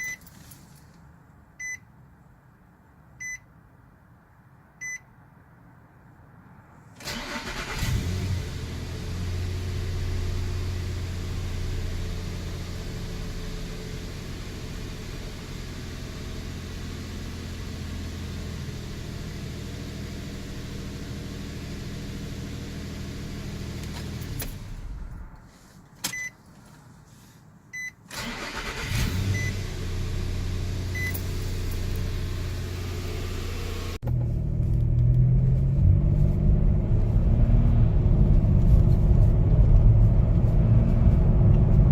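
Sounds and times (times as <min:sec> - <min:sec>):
engine cranking and starting: 0:07.0 - 0:08.2, 0:28.1 - 0:29.6.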